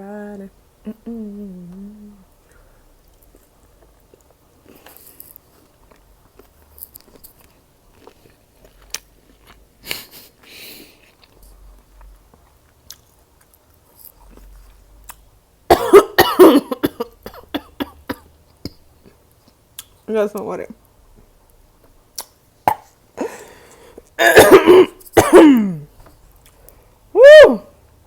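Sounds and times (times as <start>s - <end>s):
wet chewing: 3.1s - 10.2s
coughing: 15.7s - 18.8s, 24.2s - 25.9s
lip smacks: 22.1s - 22.9s.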